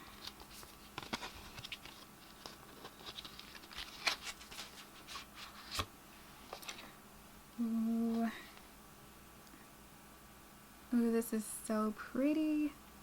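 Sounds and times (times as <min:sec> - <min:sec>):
cardboard packaging handled: 0:00.0 - 0:05.9.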